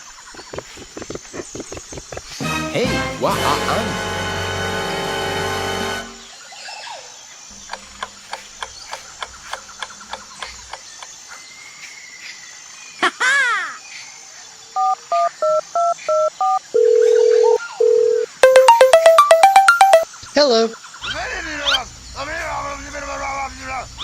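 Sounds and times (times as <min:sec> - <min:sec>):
telephone keypad tones: 0:16.8 - 0:20.0
telephone ringing tone: 0:16.8 - 0:20.0.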